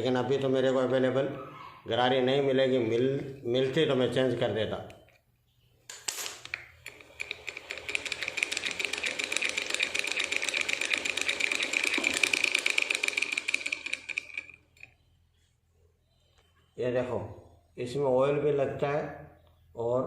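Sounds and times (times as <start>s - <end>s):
sewing machine running: 6.9s - 15.0s.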